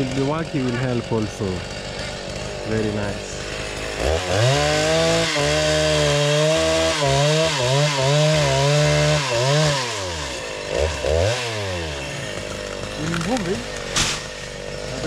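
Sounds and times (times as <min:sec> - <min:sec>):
chainsaw cutting wood: 0:00.0 - 0:15.0.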